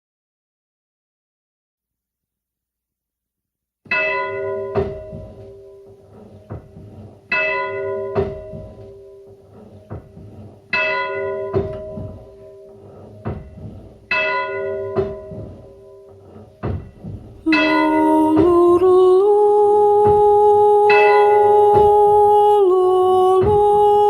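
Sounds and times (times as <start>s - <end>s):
sharp knocks: 3.9s - 19.2s, 20.0s - 20.6s, 21.2s - 22.6s, 23.2s - 24.0s
church bell strikes: 3.9s - 22.7s
music with held sliding note: 17.4s - 24.0s.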